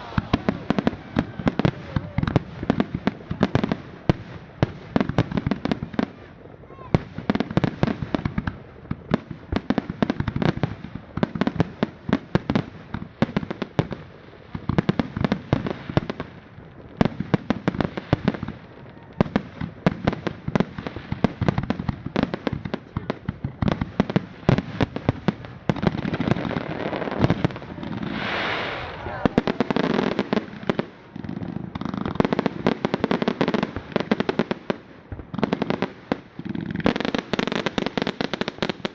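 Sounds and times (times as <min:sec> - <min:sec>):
fireworks bangs and crackling: 0:00.0 - 0:38.9.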